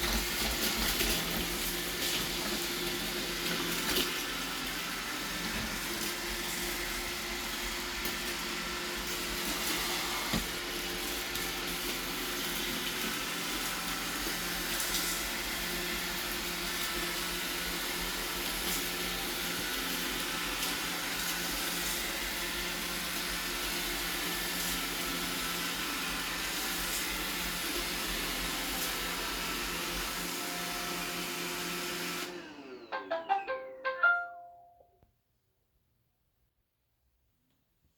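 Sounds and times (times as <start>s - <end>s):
robot vacuum cleaner humming: 0.0s - 15.8s, 29.0s - 33.6s.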